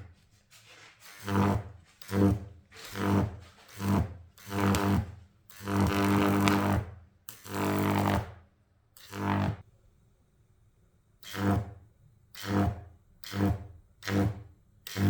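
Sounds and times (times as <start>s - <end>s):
high-voltage arcs buzzing: 1.1s - 8.2s, 9.0s - 9.6s, 11.2s - 11.8s, 12.4s - 15.0s.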